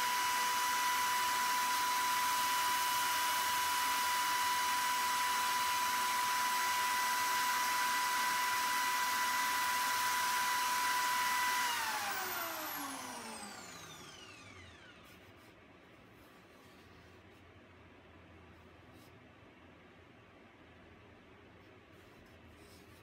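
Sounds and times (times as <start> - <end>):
small electric motor whining: 0.0 - 15.2.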